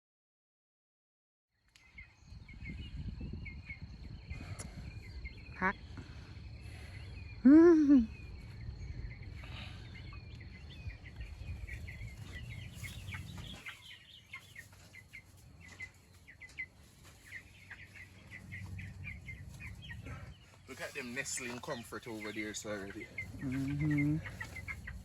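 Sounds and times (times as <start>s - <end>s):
chicks peeping: 1.9s - 7.4s, 8.0s - 25.0s
low rumble: 2.3s - 13.6s.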